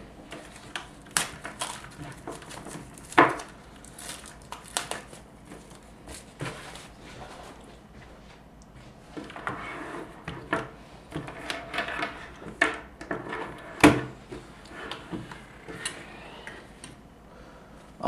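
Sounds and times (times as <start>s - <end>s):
packaging rustling: 0.3s - 7.7s.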